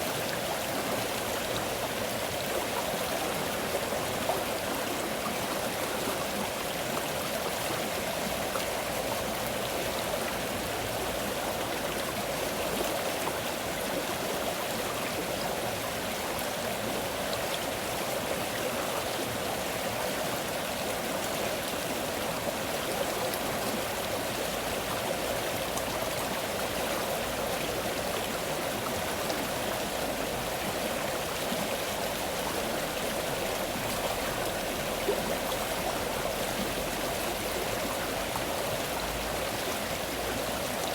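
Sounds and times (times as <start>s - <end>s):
stream water rushing: 0.0s - 40.9s.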